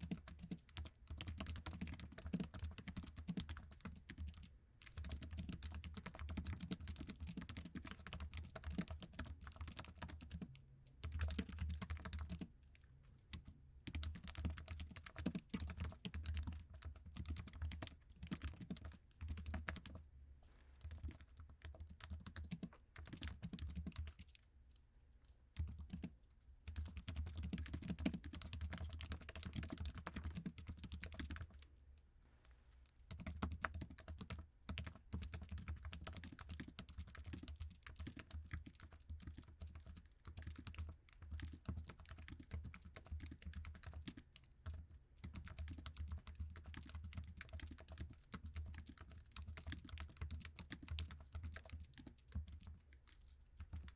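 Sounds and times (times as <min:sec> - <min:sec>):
keyboard typing clicks: 0:26.7 - 0:31.6.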